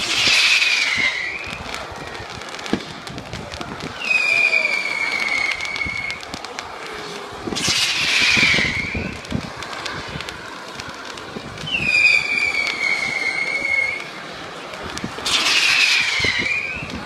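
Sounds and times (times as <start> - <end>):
shrill firework whistle: 0.0 - 6.4, 7.5 - 10.2, 11.6 - 14.2, 15.2 - 17.0
fireworks bangs and crackles: 0.0 - 17.0.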